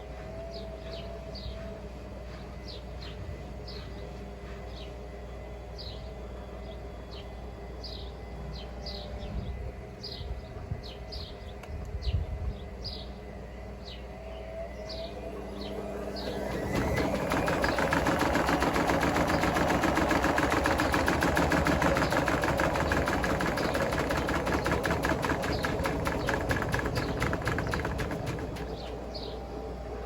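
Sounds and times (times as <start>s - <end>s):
washing machine spinning: 14.6s - 30.0s.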